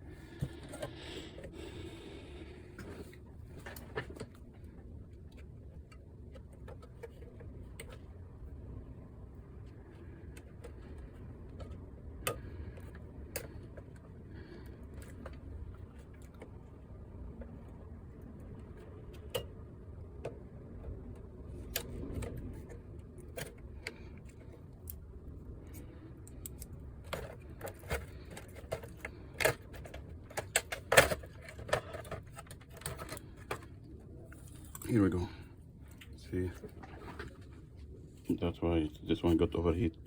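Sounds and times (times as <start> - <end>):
small clicks and metallic ticks: 25.6 - 33.7.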